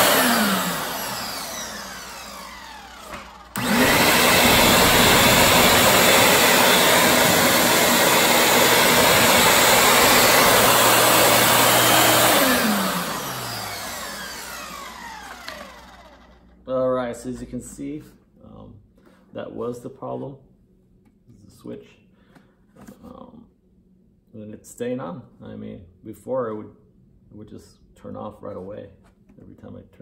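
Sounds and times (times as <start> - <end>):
vacuum motor running: 0.0 - 16.5.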